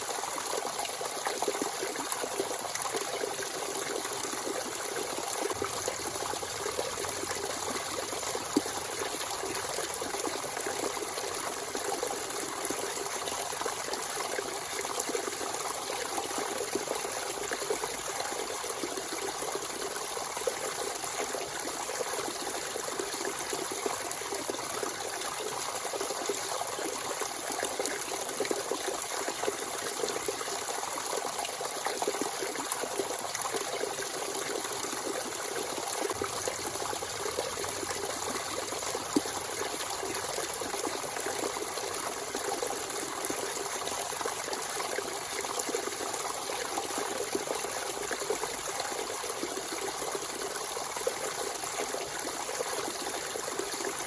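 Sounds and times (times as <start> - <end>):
spring water trickling: 3.6 - 15.7, 33.0 - 48.3.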